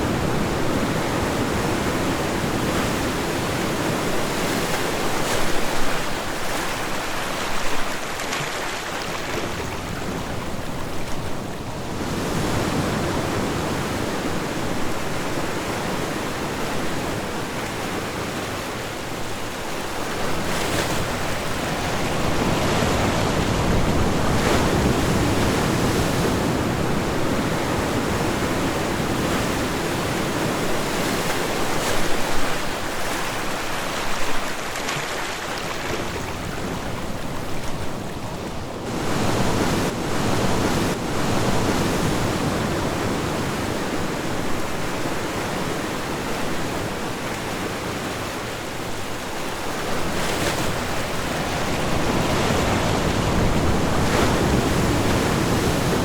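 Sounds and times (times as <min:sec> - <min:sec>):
ocean waves breaking on shore: 0:00.0 - 0:56.0.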